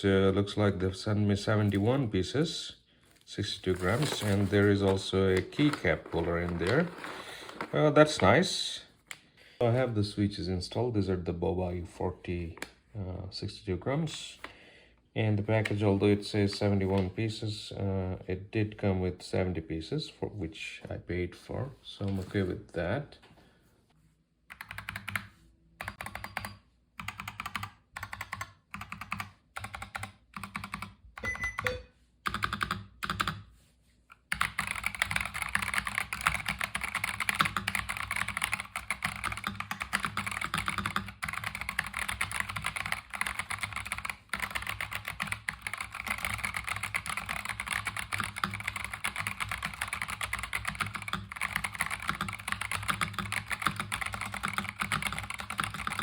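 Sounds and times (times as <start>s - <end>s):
mechanical keyboard typing: 24.5s - 33.4s, 34.2s - 56.0s.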